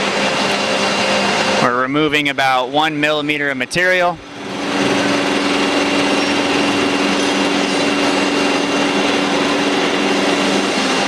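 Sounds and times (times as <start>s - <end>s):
thin high whine: 0.0s - 11.0s
turning machine cutting steel: 0.0s - 11.0s.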